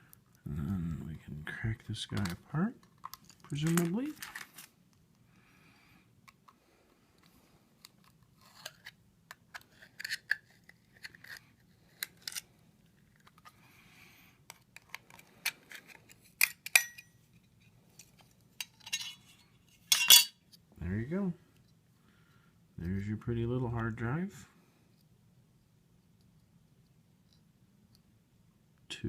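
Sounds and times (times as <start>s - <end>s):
metal tools clicking on metal casing: 16.4s - 17.1s, 18.6s - 19.3s, 19.9s - 20.4s.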